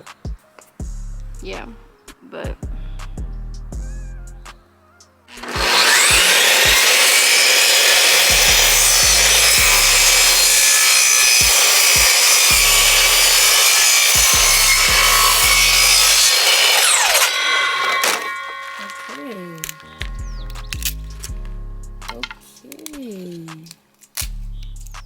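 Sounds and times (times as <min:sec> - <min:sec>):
router spindle cutting wood: 0:05.3 - 0:20.9.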